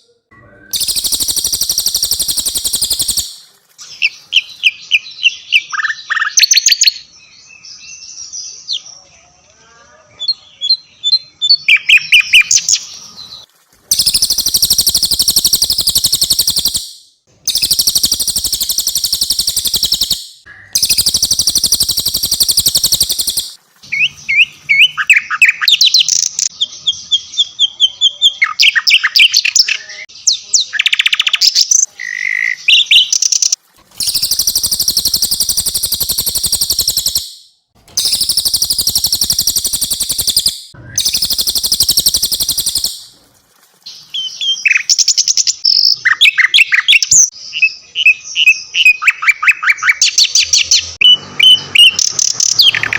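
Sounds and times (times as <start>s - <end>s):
songbirds singing: 0.0s - 9.5s, 10.2s - 43.1s
rapid high bird trill: 0.7s - 4.2s, 13.9s - 23.6s, 34.0s - 43.2s.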